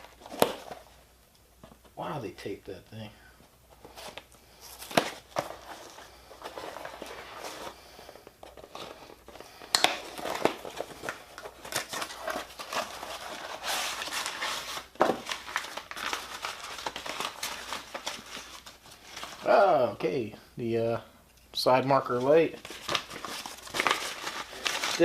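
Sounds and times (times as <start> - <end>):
packaging crinkling and tearing: 0.0 - 1.0, 3.8 - 19.6, 22.5 - 25.0.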